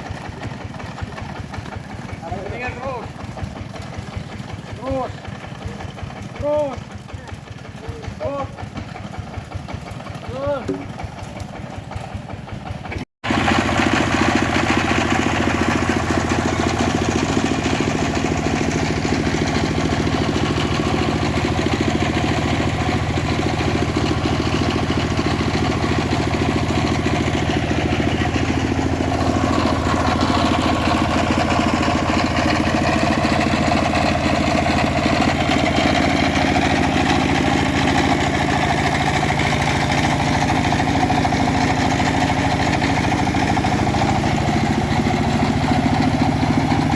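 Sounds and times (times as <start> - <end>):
engine-driven bandsaw mill running: 0.0 - 46.9.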